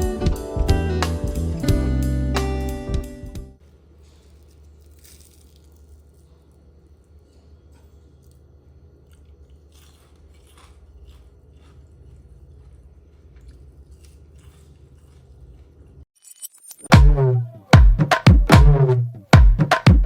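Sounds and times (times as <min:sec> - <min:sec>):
crunching and chewing food: 0:03.9 - 0:16.1
low hum: 0:16.9 - 0:19.5.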